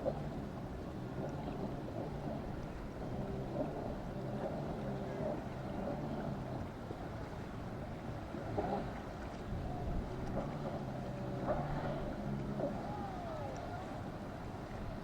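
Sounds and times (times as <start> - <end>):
boat engines humming: 0.0 - 15.0
wind on microphone: 9.3 - 15.0.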